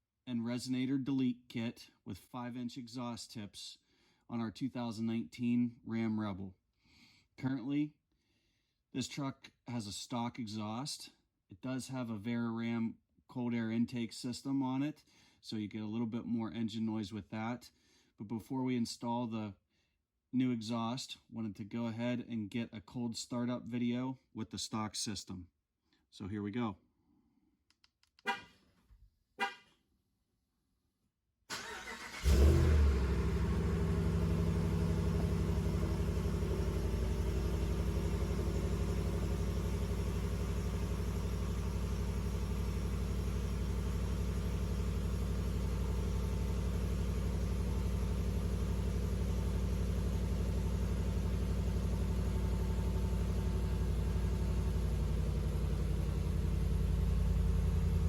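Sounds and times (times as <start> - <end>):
truck engine starting and idling: 31.5 - 58.0.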